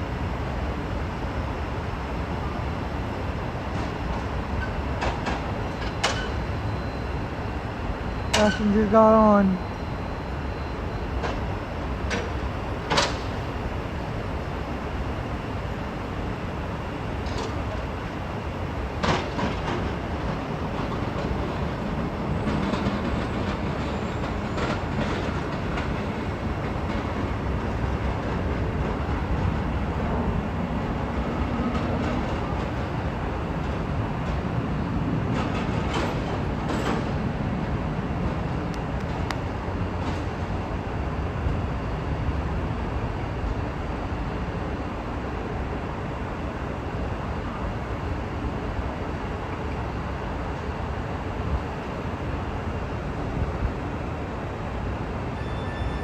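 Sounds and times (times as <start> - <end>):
train engine low rumble: 0.0 - 56.0.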